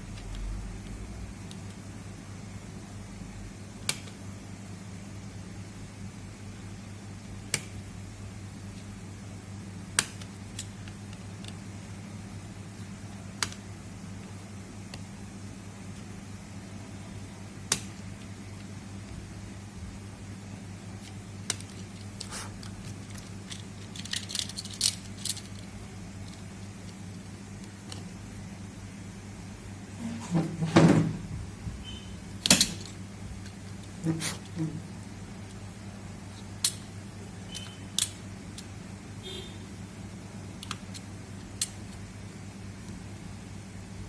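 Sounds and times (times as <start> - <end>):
steady low hum: 0.0 - 44.0
small tools clicking and clinking: 21.5 - 27.0.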